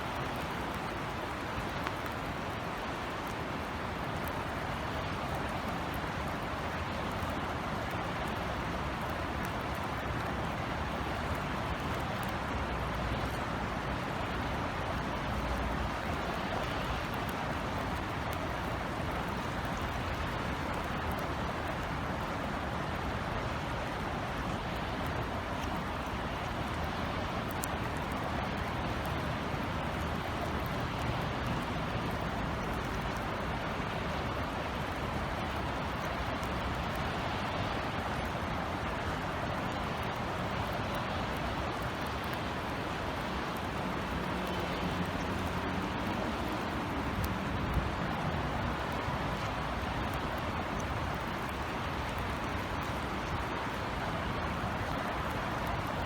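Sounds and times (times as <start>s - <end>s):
raindrop ticks: 0.0s - 56.0s
steady rain hiss: 0.0s - 56.0s.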